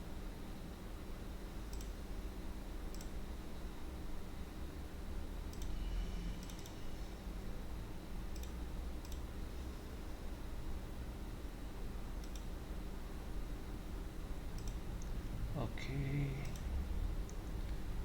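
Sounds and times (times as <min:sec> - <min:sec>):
steady low hum: 0:00.0 - 0:18.0
computer mouse clicks: 0:01.7 - 0:02.0, 0:02.9 - 0:03.2, 0:05.5 - 0:05.8, 0:06.4 - 0:06.8, 0:08.3 - 0:09.3, 0:12.2 - 0:12.5, 0:14.5 - 0:15.2, 0:16.4 - 0:17.4.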